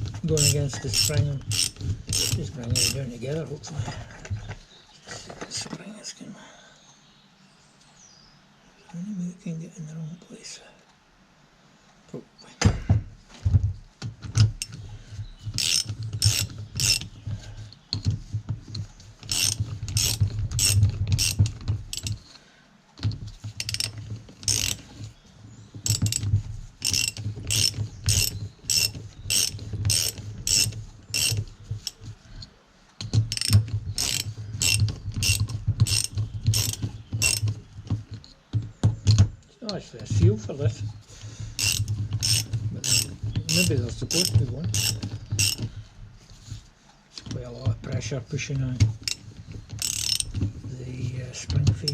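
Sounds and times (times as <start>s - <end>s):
ratchet wrench clicking: 0.4s - 3.2s, 15.6s - 17.2s, 19.2s - 22.3s, 23.6s - 24.9s, 25.8s - 32.0s, 33.3s - 37.5s, 41.6s - 45.7s, 49.0s - 50.4s.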